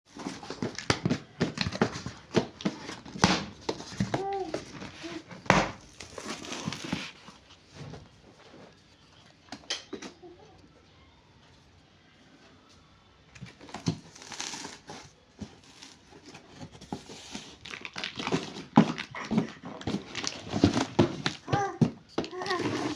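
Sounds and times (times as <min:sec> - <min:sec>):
packaging crinkling and rustling: 0:00.1 - 0:08.9, 0:13.4 - 0:22.9.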